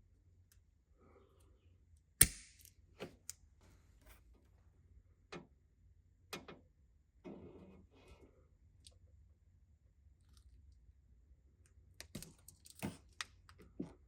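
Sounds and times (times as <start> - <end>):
wire cutters snapping: 2.2 - 2.7.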